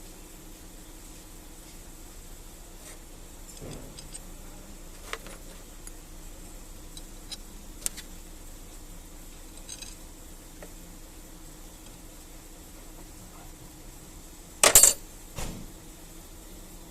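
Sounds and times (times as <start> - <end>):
steady low hum: 0.0 - 16.9
metal parts and tools clinking: 9.5 - 10.0, 14.6 - 15.0.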